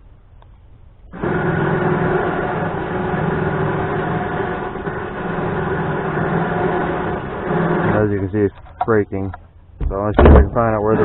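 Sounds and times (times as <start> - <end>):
winch motor whining: 1.1 - 9.4, 10.0 - 11.0.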